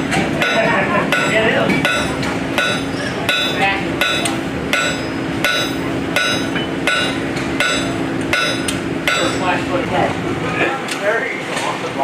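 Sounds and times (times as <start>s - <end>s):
low mechanical hum: 0.0s - 12.0s
ringing metal-on-metal strikes: 0.4s - 9.6s.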